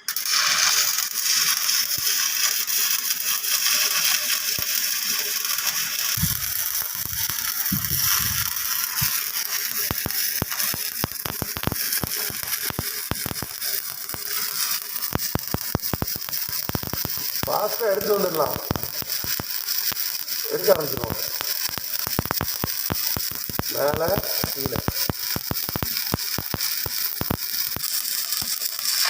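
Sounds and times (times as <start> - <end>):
welding arc crackling and hissing: 0.0 - 29.0
low thuds: 6.2 - 6.4.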